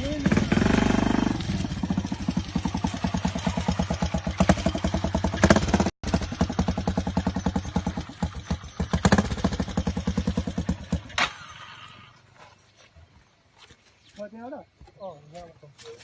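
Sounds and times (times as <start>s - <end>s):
motorcycle engine running: 0.0s - 11.8s.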